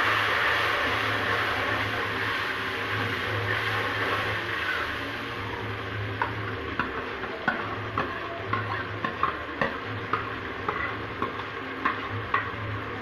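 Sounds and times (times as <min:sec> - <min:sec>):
onions sizzling in a pan: 0:00.0 - 0:13.0
spoon clacking against a pan: 0:06.2 - 0:12.7.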